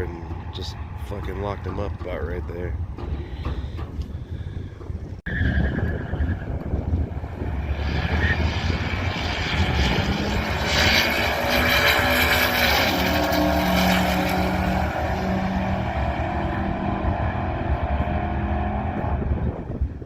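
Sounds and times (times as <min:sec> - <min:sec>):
car engine accelerating hard: 0:07.3 - 0:19.8.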